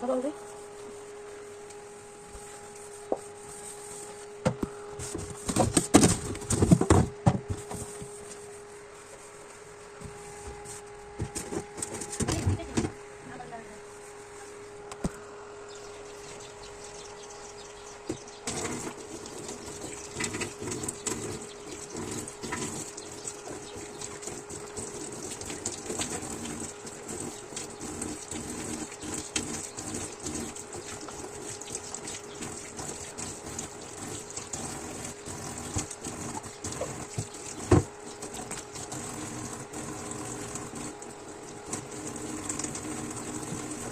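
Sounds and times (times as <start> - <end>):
tap water running into sink: 18.5 - 43.9.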